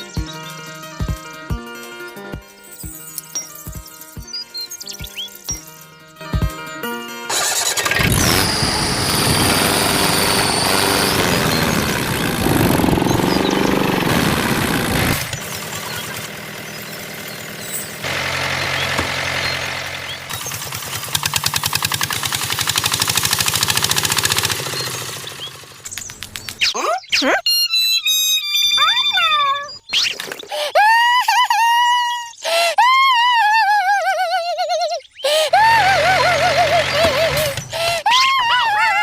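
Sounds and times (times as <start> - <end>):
engine starting and chugging: 7.3 - 26.6, 35.3 - 38.8.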